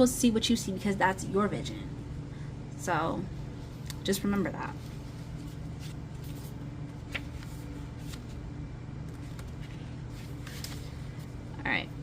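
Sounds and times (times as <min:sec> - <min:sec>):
low room hum: 0:00.0 - 0:12.0
cards tapping and rustling: 0:09.1 - 0:11.0.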